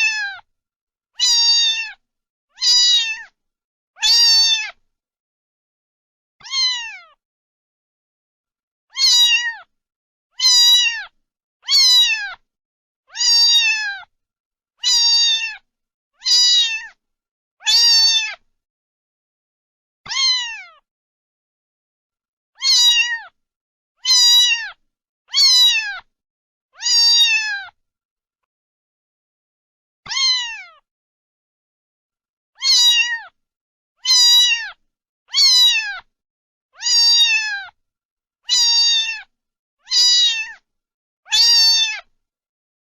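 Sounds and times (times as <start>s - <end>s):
cat meowing: 0.0s - 0.4s, 1.2s - 2.0s, 2.6s - 3.4s, 4.0s - 4.8s, 6.4s - 7.2s, 8.9s - 9.7s, 10.4s - 12.4s, 13.1s - 14.1s, 14.8s - 15.6s, 16.2s - 17.0s, 17.6s - 18.4s, 20.1s - 20.8s, 22.6s - 23.4s, 24.0s - 26.1s, 26.8s - 27.8s, 30.0s - 30.8s, 32.6s - 33.4s, 34.0s - 36.1s, 36.8s - 37.8s, 38.5s - 40.6s, 41.3s - 42.1s.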